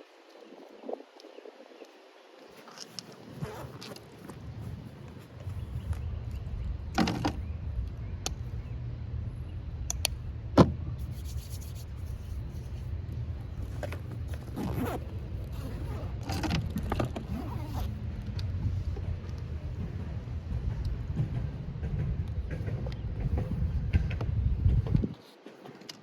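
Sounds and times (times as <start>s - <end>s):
wind buffeting microphone: 0.0s - 25.3s
sharp clicks and knocks: 20.6s - 26.0s.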